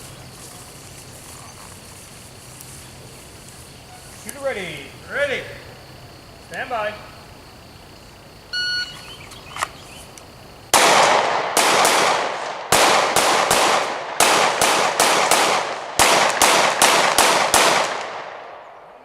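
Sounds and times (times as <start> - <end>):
pistol shots in rapid strings: 10.8 - 18.3.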